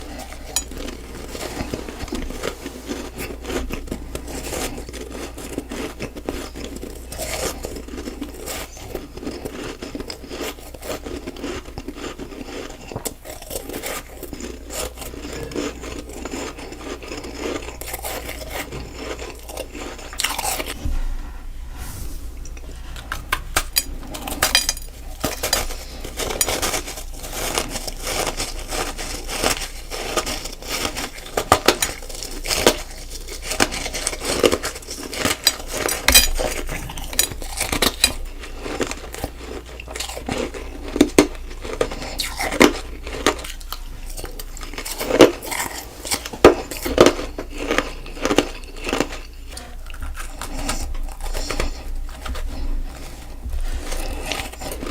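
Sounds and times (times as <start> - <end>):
frost being bitten and chewed: 0.0 - 20.8, 22.5 - 54.9.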